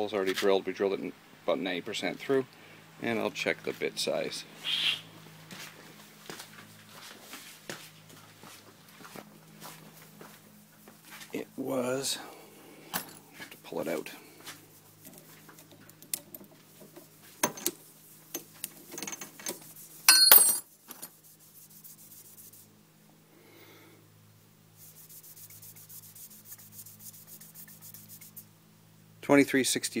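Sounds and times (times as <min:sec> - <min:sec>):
ringing metallic clink: 0:20.1 - 0:20.6.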